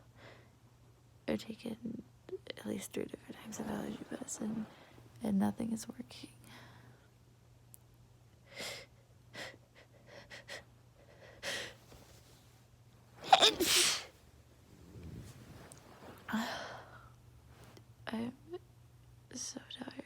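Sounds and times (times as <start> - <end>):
woman breathing and sniffing: 8.6 - 12.4, 13.2 - 14.1
woman sneezing: 13.2 - 14.1.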